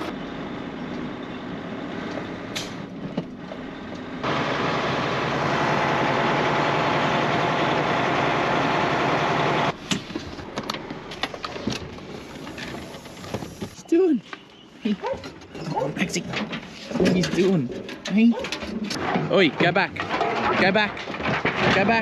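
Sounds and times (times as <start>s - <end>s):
vehicle engine running: 0.0s - 9.9s.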